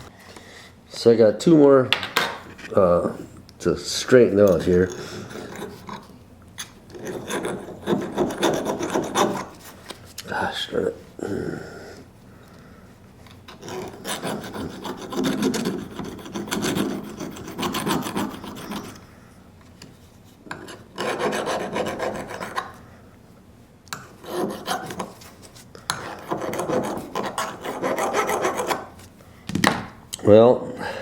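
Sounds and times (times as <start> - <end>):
file rasping on metal blade: 4.9 - 6.1, 6.9 - 9.6, 13.5 - 19.0, 20.5 - 22.8, 24.0 - 25.2, 25.9 - 29.0.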